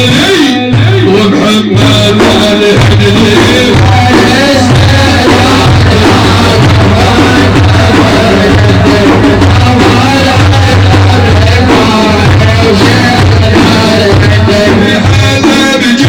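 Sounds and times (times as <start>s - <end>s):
heavy drum beat: 0.0s - 16.0s
wavering melody: 3.6s - 14.8s.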